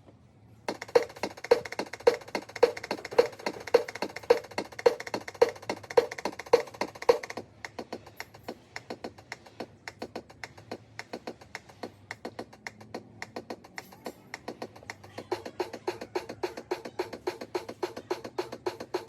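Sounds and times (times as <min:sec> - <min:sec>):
light quick ticking rhythm: 0:00.7 - 0:19.0
wood-block-like beat: 0:00.7 - 0:19.0.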